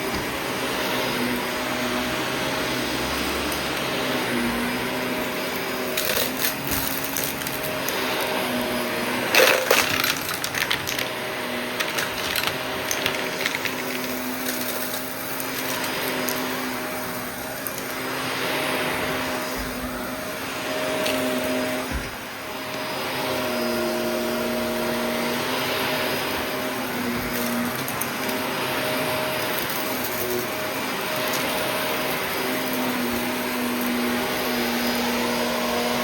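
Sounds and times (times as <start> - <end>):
vacuum cleaner motor hum: 0.0 - 36.0
debris rattling in vacuum: 2.6 - 18.1, 26.0 - 36.0.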